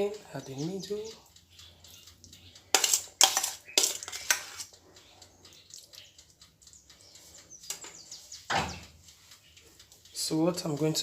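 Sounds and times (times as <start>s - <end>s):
spoon scraping bowl: 2.7s - 4.8s.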